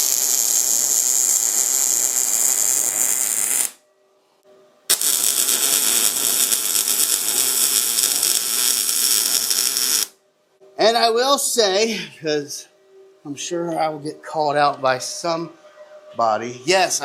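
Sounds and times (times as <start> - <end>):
welding arc crackling buzz: 0.0 - 3.8, 4.9 - 10.2.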